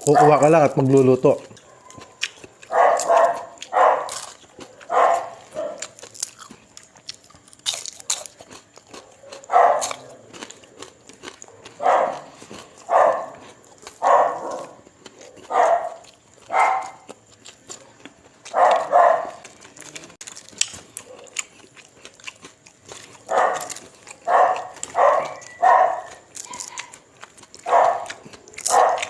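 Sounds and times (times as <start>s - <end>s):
person eating crunchily: 0.0s - 29.0s
dog barking: 0.1s - 0.5s, 1.6s - 6.0s, 8.9s - 10.4s, 11.2s - 17.2s, 18.4s - 19.5s, 21.0s - 21.4s, 23.2s - 27.0s, 27.6s - 29.0s.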